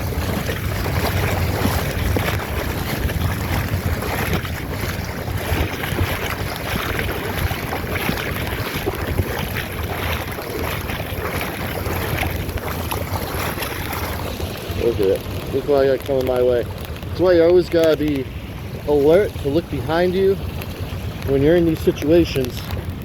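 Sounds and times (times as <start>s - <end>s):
floodwater rushing: 0.0s - 23.0s
wind buffeting microphone: 0.0s - 23.0s.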